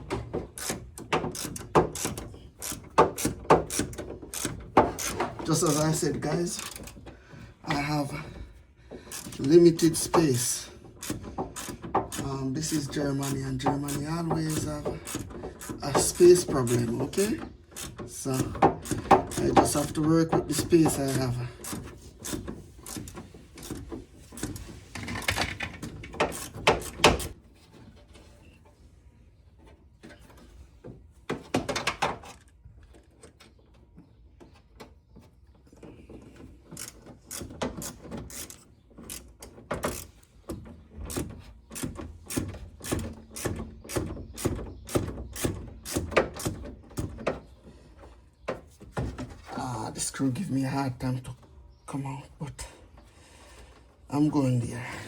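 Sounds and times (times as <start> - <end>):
hand tools knocking on metal: 9.3 - 22.4.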